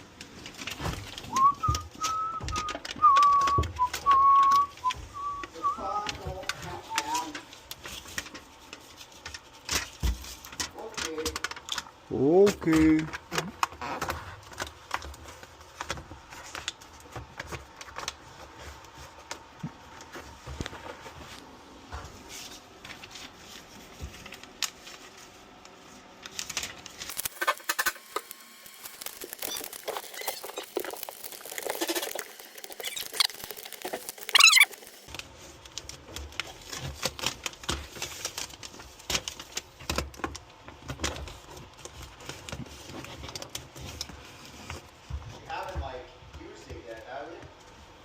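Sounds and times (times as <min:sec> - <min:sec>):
wavering squeak: 0:31.6 - 0:34.9.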